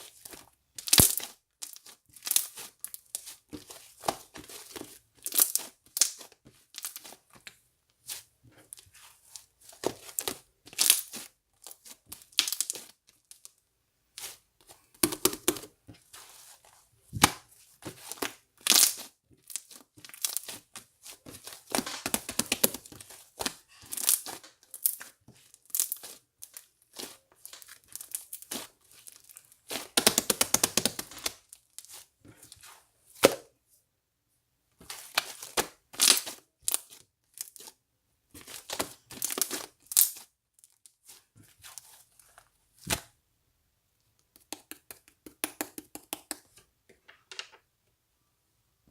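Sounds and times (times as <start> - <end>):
crinkling and tearing material: 0.0 - 7.4, 8.0 - 13.5, 14.2 - 32.6, 34.8 - 37.8, 38.4 - 43.1.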